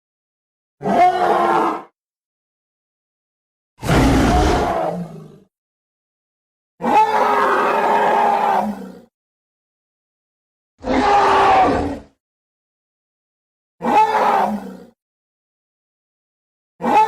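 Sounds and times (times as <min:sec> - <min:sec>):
dinosaur roar: 0:00.8 - 0:02.0, 0:03.8 - 0:05.5, 0:06.8 - 0:09.1, 0:10.8 - 0:12.2, 0:13.8 - 0:15.0.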